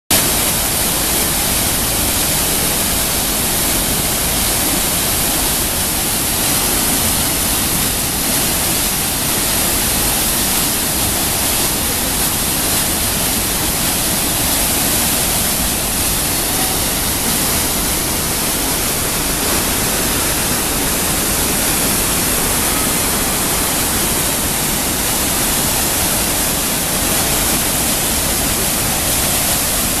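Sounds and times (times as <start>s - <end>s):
waterfall rushing: 0.1s - 30.0s.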